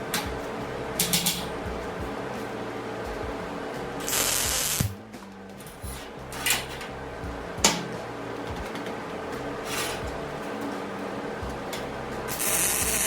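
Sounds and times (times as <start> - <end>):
steady low hum: 0.0 - 13.0
short hiss bursts: 4.1 - 5.0.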